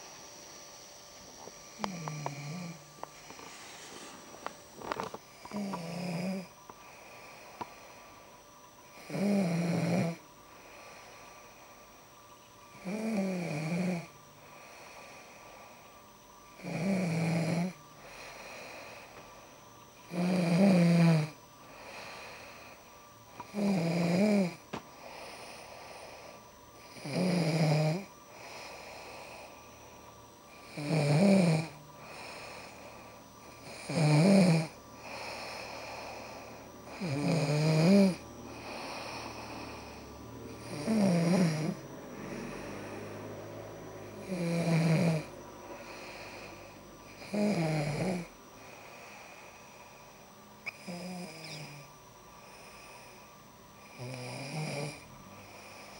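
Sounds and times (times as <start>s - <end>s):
soft breathing: 0.0s - 8.5s, 18.0s - 19.8s, 21.6s - 26.9s, 28.0s - 30.7s, 31.6s - 33.7s, 34.8s - 37.3s, 38.0s - 44.3s, 45.3s - 47.3s, 48.2s - 54.0s, 55.0s - 55.9s
woman snoring: 1.4s - 8.1s, 8.9s - 11.6s, 12.7s - 15.8s, 16.5s - 19.2s, 20.0s - 29.9s, 30.5s - 55.9s.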